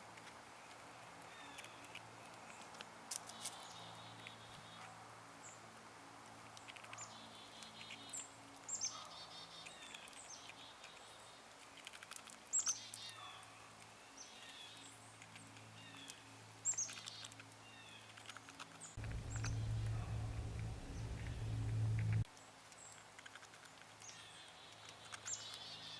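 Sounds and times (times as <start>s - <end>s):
loud low hum: 19.0s - 22.2s
scattered clicks: 19.0s - 22.2s
squirrels chattering trills: 19.0s - 22.2s
squirrels chirping: 19.0s - 22.2s.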